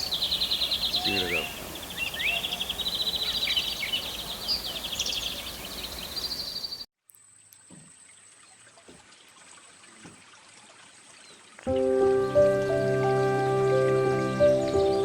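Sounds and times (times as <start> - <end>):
birds chirping: 0.0 - 6.9, 11.1 - 15.0.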